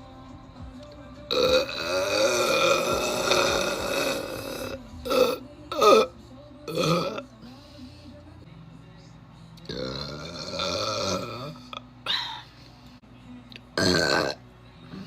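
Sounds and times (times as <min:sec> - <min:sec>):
person burping: 0:01.3 - 0:06.1, 0:06.7 - 0:07.3, 0:09.6 - 0:12.5, 0:13.8 - 0:14.4.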